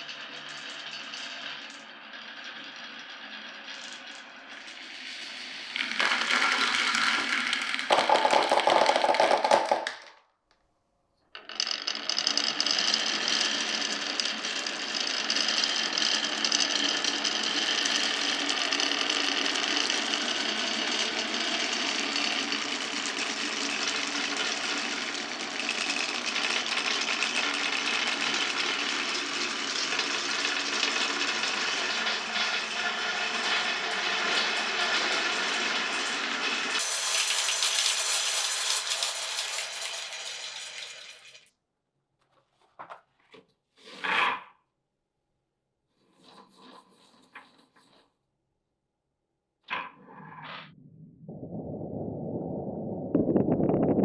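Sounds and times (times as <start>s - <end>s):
marbles rattling on wooden run: 3.6s - 10.2s, 11.4s - 35.8s, 36.8s - 41.5s.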